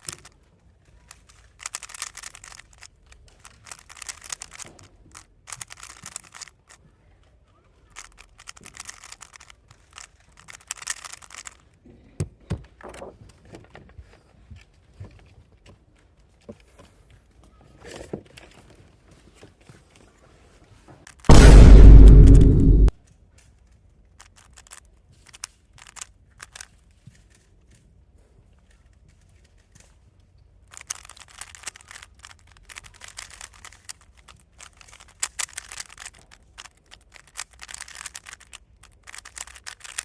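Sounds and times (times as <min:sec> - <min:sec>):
speedcube clicking: 0:00.0 - 0:00.4, 0:01.0 - 0:06.8, 0:07.9 - 0:11.6, 0:24.2 - 0:26.7, 0:30.7 - 0:40.0
deep boom sound effect: 0:21.3 - 0:22.9.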